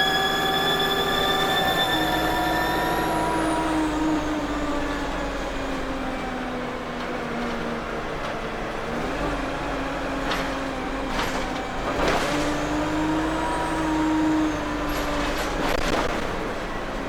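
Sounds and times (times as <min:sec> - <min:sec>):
turbo whine: 0:00.0 - 0:05.7
bus engine: 0:00.0 - 0:17.0
bus body knocks and rattles: 0:06.7 - 0:17.0.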